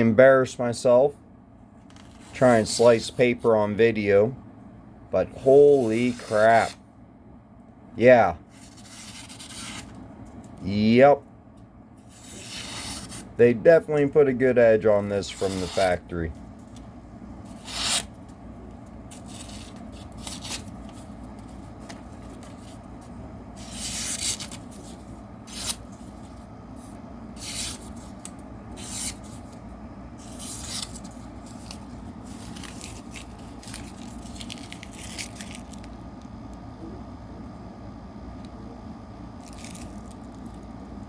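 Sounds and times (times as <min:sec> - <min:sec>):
knife slicing paper: 0:08.5 - 0:09.9, 0:12.1 - 0:13.3, 0:15.3 - 0:16.0, 0:17.5 - 0:18.1, 0:19.1 - 0:20.8, 0:23.6 - 0:26.0, 0:27.4 - 0:29.5, 0:30.2 - 0:35.5.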